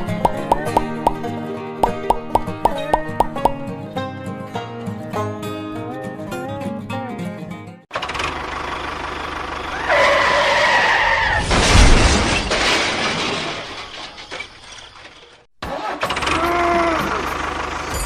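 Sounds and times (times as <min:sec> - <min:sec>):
loud crash: 0:11.2 - 0:14.3.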